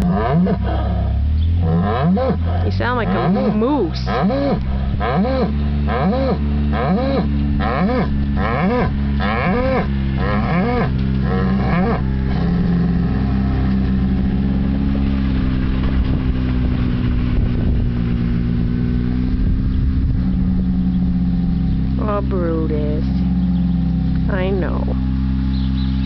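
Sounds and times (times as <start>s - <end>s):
animal moaning calls: 0.0s - 14.9s
steady low hum: 0.0s - 26.0s.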